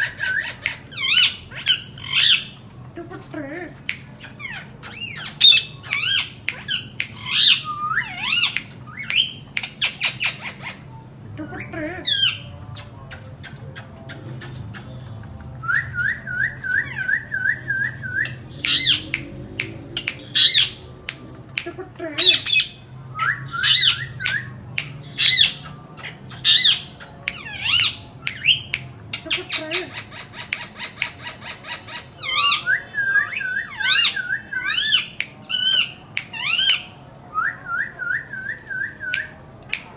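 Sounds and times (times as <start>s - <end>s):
parrot squawking and whistling: 4.2s - 10.8s, 15.7s - 19.2s, 20.0s - 20.8s, 22.2s - 36.9s.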